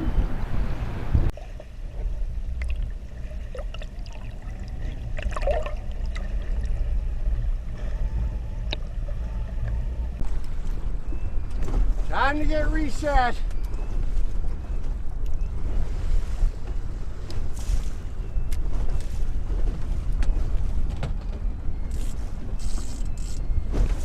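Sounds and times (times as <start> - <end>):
boat engine low rumble: 0.0 - 24.0
water gurgling: 1.4 - 7.4.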